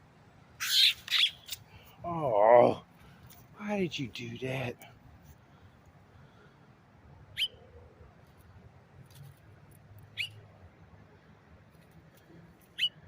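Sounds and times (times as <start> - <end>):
small bird chirping: 0.6 - 1.6, 7.3 - 7.7, 10.0 - 10.4, 12.6 - 13.0.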